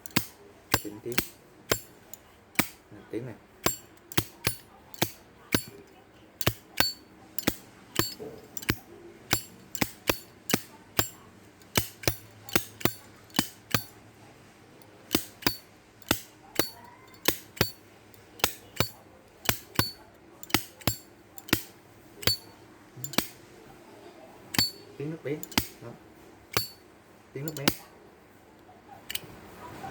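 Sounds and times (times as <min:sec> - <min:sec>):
lighter lid clinking: 0:03.6 - 0:05.8, 0:06.4 - 0:13.9, 0:15.1 - 0:17.8, 0:18.4 - 0:23.4, 0:24.5 - 0:25.8, 0:27.5 - 0:27.8.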